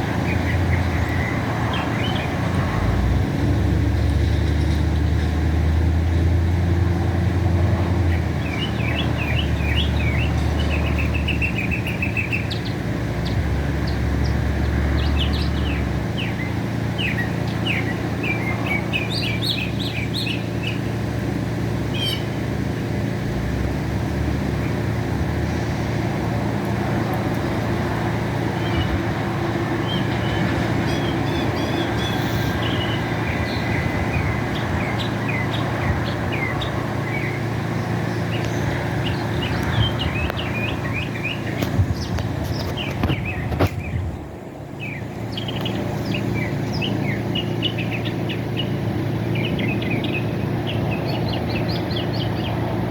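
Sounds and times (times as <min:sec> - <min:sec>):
mockingbird singing: 0:15.0 - 0:20.9, 0:44.8 - 0:52.7.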